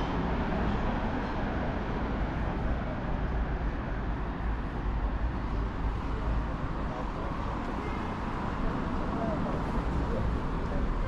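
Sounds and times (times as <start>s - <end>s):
low hum of traffic: 0.0s - 11.0s
indistinct chatter of people: 5.9s - 11.0s.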